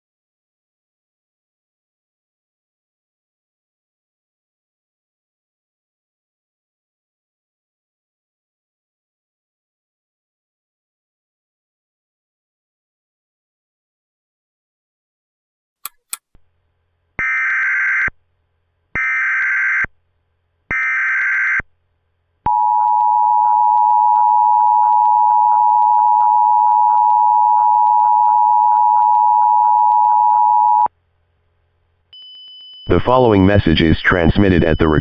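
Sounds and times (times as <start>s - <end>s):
short clicks: 15.8s - 16.4s
steady attention tone: 23.6s - 30.9s, 32.2s - 35.0s
digital data tone bursts: 32.9s - 35.0s.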